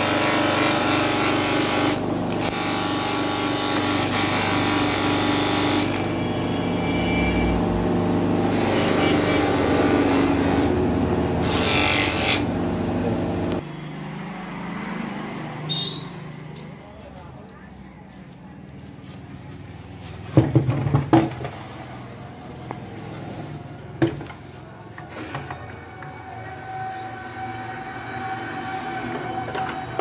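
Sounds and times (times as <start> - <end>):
sewing machine running: 0.0 - 7.2, 8.3 - 12.6.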